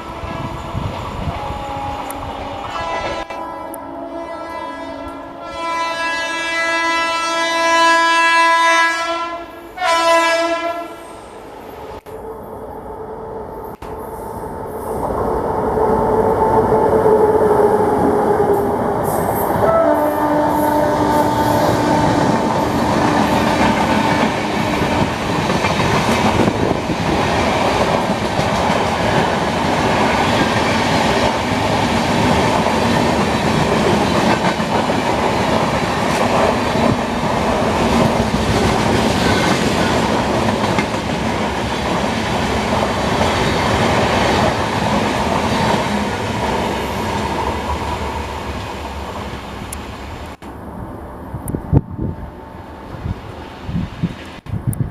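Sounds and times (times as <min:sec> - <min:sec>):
locomotive horn: 0:00.0 - 0:11.2, 0:19.6 - 0:25.1, 0:39.1 - 0:40.1
train wheels rattling on rails: 0:16.4 - 0:49.3.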